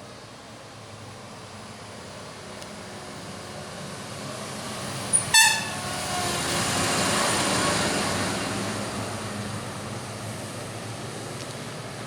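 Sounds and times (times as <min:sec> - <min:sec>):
heavy vehicle engine and road noise: 0:00.0 - 0:12.0
short high-pitched horn toot: 0:05.3 - 0:05.8.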